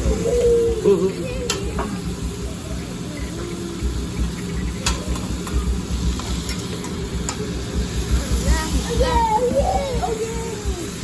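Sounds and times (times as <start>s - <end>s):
food sizzling on a griddle: 0.0s - 11.0s
restaurant din: 0.0s - 11.0s.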